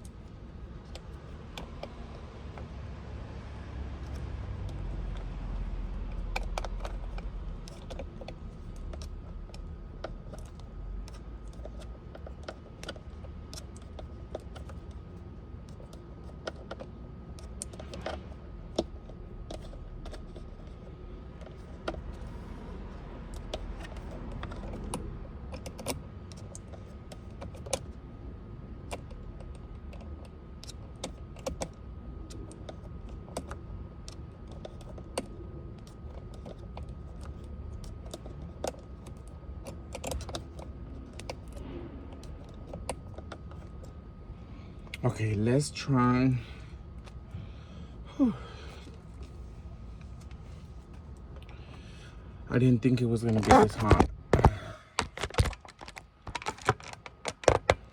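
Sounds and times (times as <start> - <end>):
steady low hum: 0.0 - 57.9
tool clicking and tapping on plastic trim: 4.0 - 15.0, 28.8 - 43.7.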